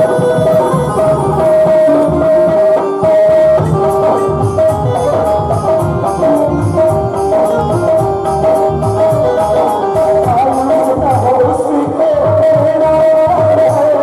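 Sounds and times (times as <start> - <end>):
held melodic notes: 0.0 - 14.0
steady drum rhythm: 0.0 - 14.0.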